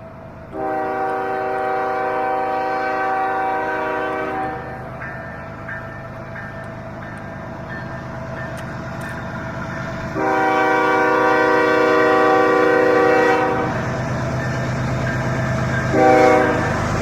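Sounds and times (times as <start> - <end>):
train rumble and wheel clatter: 0.0 - 17.0
train horn blast: 0.5 - 4.9, 10.1 - 14.0, 15.9 - 17.0.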